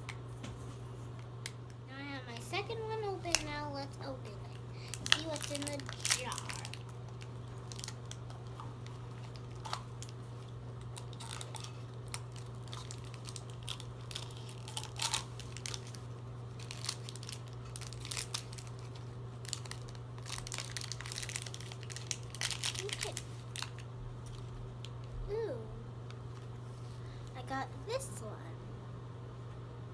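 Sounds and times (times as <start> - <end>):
steady low hum: 0.0 - 29.9
plastic packaging crinkling and tearing: 2.3 - 3.6, 4.2 - 25.1.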